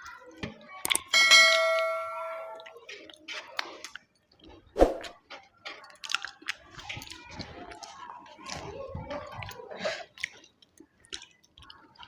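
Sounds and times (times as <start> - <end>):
close chewing and eating: 0.0 - 1.1, 2.5 - 12.0
metal dish ringing: 1.1 - 2.6.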